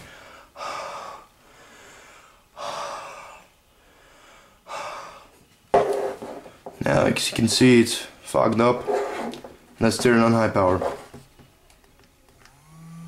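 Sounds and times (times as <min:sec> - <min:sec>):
person breathing out hard: 0:00.0 - 0:05.4
quiet in-breaths: 0:00.0 - 0:05.5.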